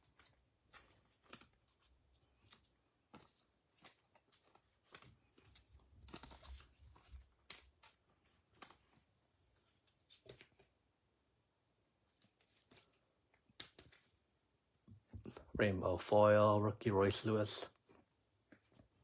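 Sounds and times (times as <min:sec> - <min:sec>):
trading cards rustling and clicking: 0:00.0 - 0:10.8, 0:12.0 - 0:14.3.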